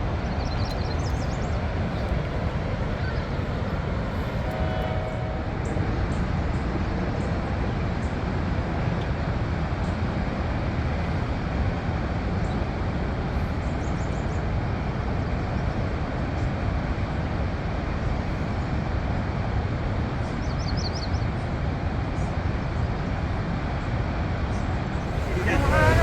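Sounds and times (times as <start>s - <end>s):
waterfall roaring: 25.0s - 26.0s.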